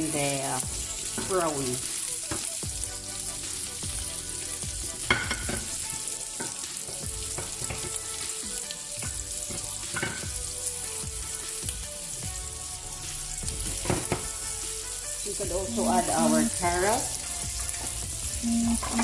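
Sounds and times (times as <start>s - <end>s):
food sizzling in a frying pan: 0.0s - 19.0s
spoon scraping and knocking pan: 0.6s - 2.8s, 3.8s - 11.8s, 13.4s - 14.6s, 15.6s - 19.0s.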